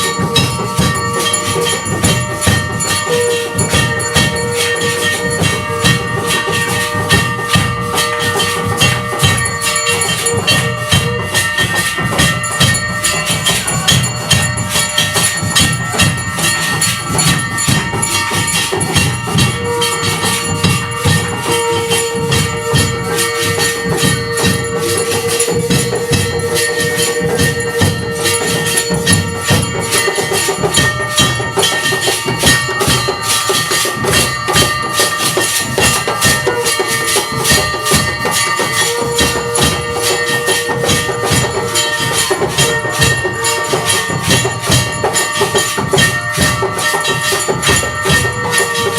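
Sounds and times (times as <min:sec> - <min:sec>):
bells and jingling percussion: 0:00.0 - 0:48.9
drumming: 0:00.0 - 0:48.9
long held note: 0:16.4 - 0:30.8.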